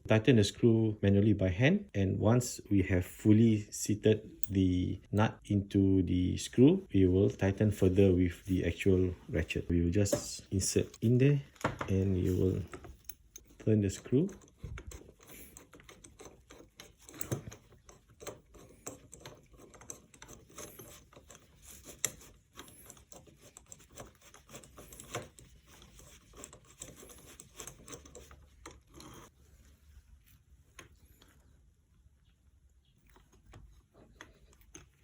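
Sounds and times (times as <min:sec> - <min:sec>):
metal socket clicking and scraping: 0:12.4 - 0:29.3.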